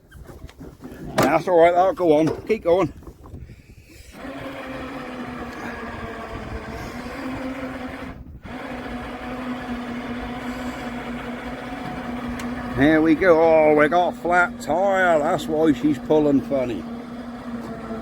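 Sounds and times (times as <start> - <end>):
electric winch motor running: 4.0 - 18.0.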